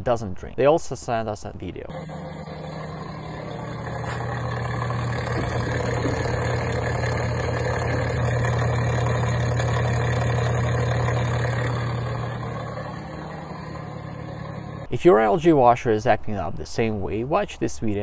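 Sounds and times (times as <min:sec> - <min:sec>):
drain pump humming and grinding: 0:01.9 - 0:14.9.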